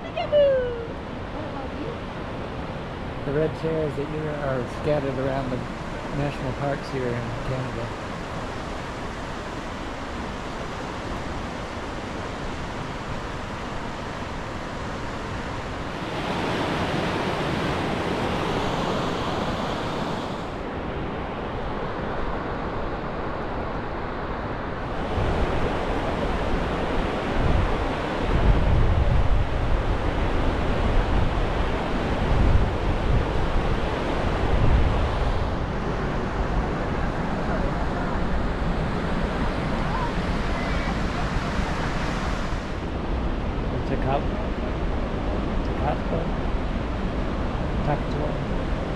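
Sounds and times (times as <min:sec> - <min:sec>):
wind buffeting microphone: 0:24.6 - 0:48.9.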